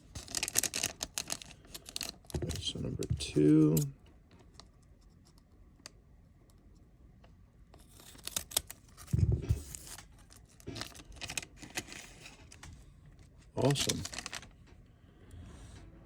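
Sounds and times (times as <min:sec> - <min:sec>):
wrapper rustling: 0:00.2 - 0:02.8, 0:13.6 - 0:14.5.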